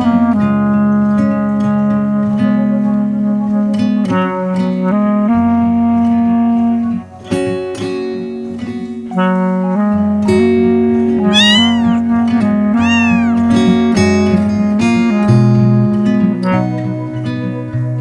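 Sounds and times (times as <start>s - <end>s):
kitten meowing: 11.3s - 12.0s, 12.8s - 13.5s.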